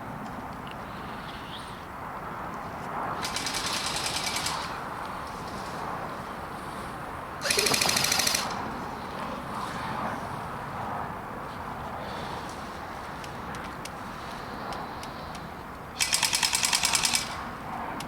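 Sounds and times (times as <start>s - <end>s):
airsoft gun full-auto bursts: 3.2s - 4.7s, 7.4s - 8.6s, 16.0s - 17.4s.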